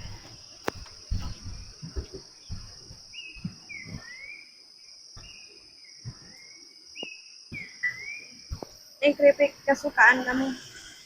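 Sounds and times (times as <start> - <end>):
soft knocks and thumps: 0.0 - 4.1
high insect drone: 0.0 - 11.0
bird gliding whistles: 3.1 - 4.5, 6.2 - 8.4.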